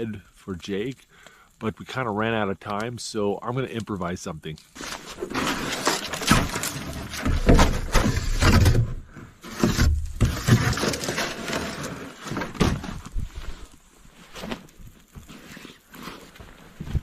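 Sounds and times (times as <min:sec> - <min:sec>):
bedding and gear rustling: 0:04.6 - 0:17.0.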